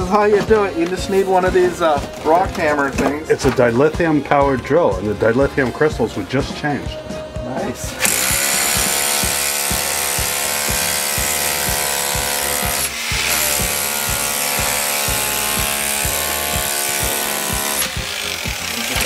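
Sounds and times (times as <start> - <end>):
power drill whining into brick: 8.0 - 19.0.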